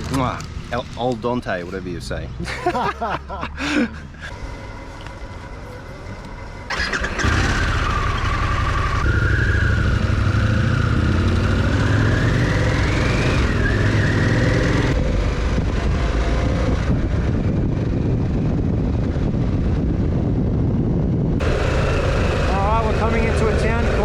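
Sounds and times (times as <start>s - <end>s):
motorcycle engine accelerating: 4.3s - 24.0s
wind noise on microphone: 12.6s - 21.5s.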